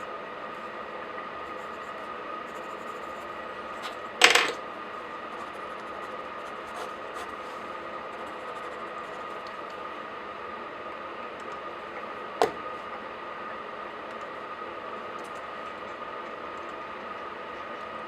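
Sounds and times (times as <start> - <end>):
hard object clattering on desk: 4.2 - 4.6.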